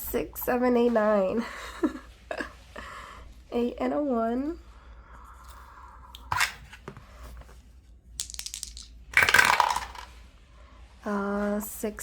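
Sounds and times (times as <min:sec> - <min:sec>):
dice clicking and clattering: 0:08.2 - 0:10.1.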